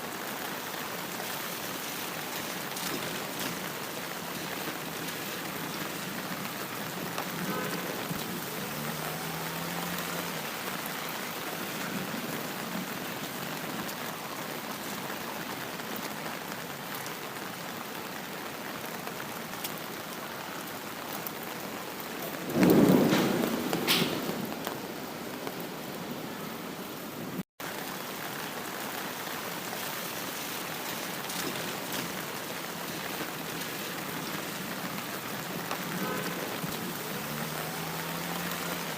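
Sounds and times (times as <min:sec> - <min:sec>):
steady rain: 0:00.0 - 0:38.9
loud thunder crack: 0:22.4 - 0:24.8.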